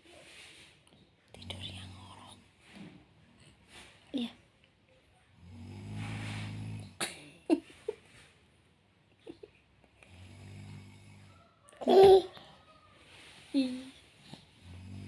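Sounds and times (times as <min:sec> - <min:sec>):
person snoring: 0:05.4 - 0:07.0, 0:10.0 - 0:11.4, 0:13.6 - 0:15.0.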